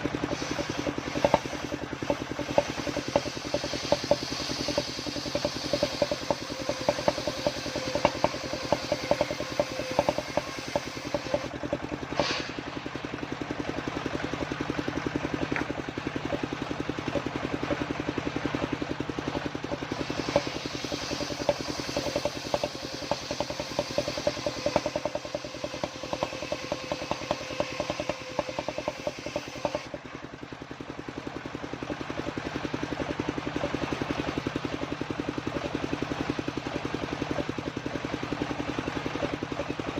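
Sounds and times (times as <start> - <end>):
saw blade cutting wood: 0.0 - 12.8, 19.3 - 30.0
saw engine running: 0.0 - 39.9.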